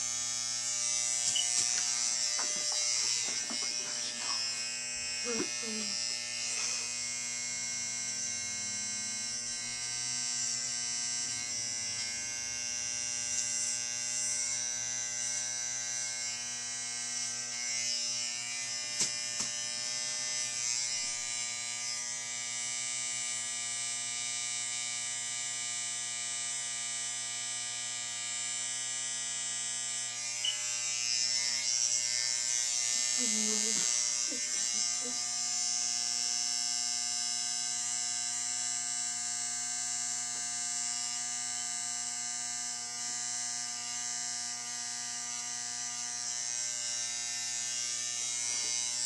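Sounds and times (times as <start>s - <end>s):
electric hair clippers buzzing: 0.0s - 49.0s.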